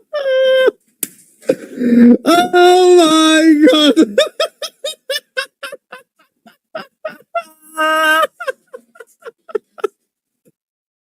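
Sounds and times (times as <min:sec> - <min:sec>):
man crying out and wailing: 0:01.9 - 0:09.9.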